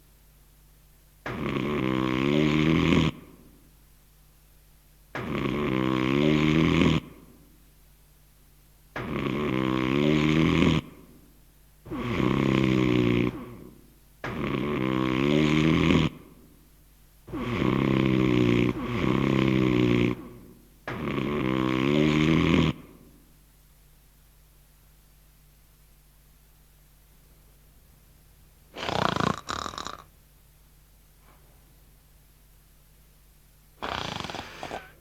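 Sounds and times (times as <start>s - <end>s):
person snoring loudly: 1.3s - 3.4s, 5.2s - 7.3s, 9.0s - 11.1s, 11.9s - 16.4s, 17.3s - 23.1s, 28.7s - 30.1s, 33.8s - 35.0s.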